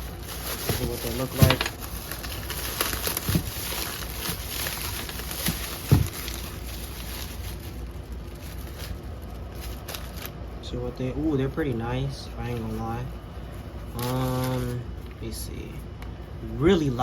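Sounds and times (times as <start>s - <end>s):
packaging rustling: 0.0s - 10.4s, 13.8s - 14.8s.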